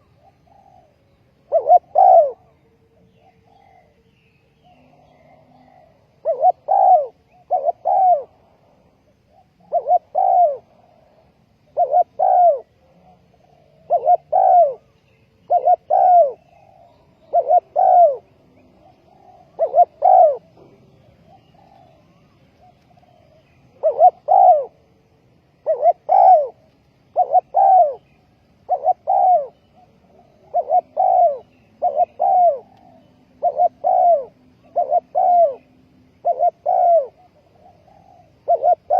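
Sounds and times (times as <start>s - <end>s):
dove cooing: 0.0s - 38.9s.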